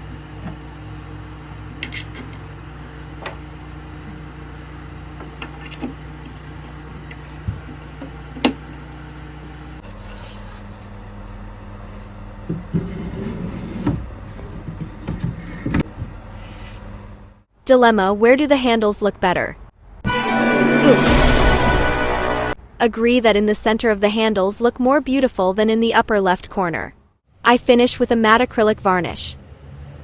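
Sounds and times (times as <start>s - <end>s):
wood knocking and scraping: 0.0s - 4.2s, 5.2s - 10.8s
steady low hum: 0.0s - 17.5s.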